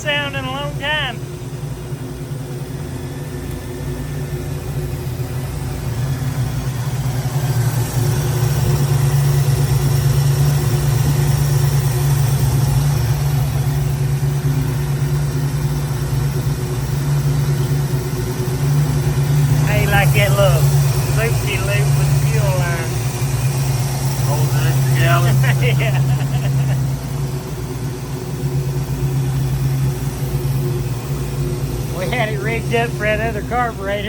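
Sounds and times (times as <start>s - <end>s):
car engine idling: 0.0s - 34.0s.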